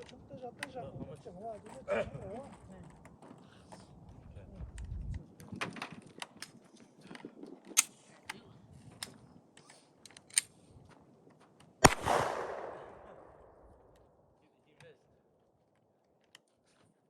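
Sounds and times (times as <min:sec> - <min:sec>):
loud gunshot with echo: 0:11.8 - 0:13.6
faint sharp cracks: 0:11.8 - 0:14.1.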